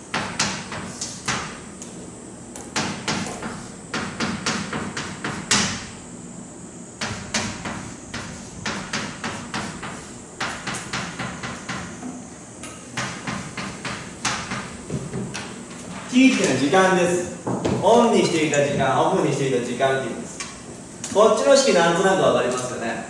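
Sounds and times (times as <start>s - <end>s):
writing on a board: 2.8s - 5.8s, 7.0s - 11.9s.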